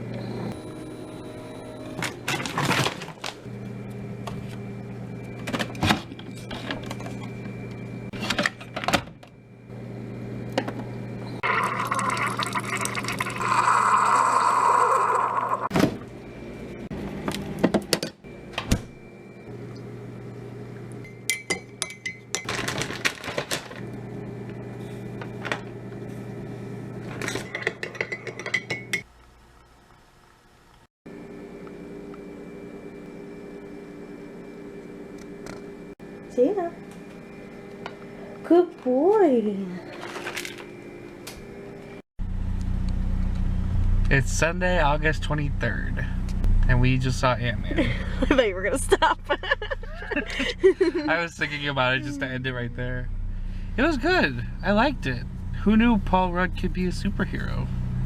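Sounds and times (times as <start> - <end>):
steady electrical hum: 0.0 - 27.4, 29.0 - 58.0
dishes clinking and knocking: 27.2 - 29.1.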